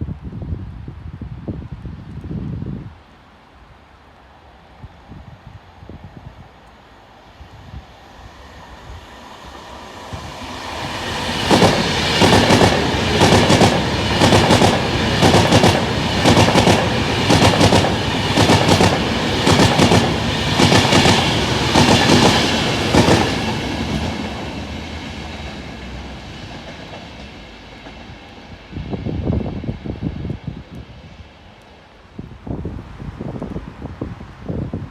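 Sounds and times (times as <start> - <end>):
train wheels clattering over rails: 10.2 - 28.5.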